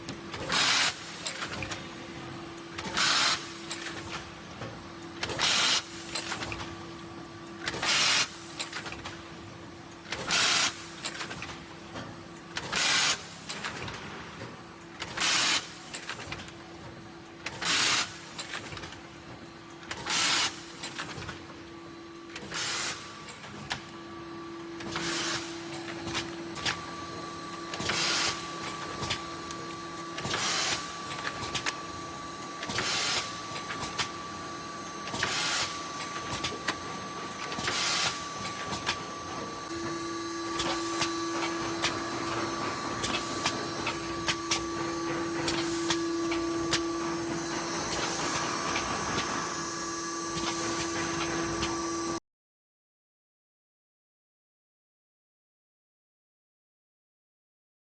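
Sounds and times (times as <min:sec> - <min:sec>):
machine hum with whine: 0:00.0 - 0:52.2
packaging machine bursts of noise: 0:00.3 - 0:01.7, 0:02.8 - 0:04.0, 0:05.2 - 0:06.4, 0:07.7 - 0:08.8, 0:10.2 - 0:11.2, 0:12.6 - 0:13.8, 0:15.0 - 0:16.2, 0:17.5 - 0:18.6, 0:19.9 - 0:21.1, 0:22.4 - 0:24.1, 0:24.7 - 0:52.2.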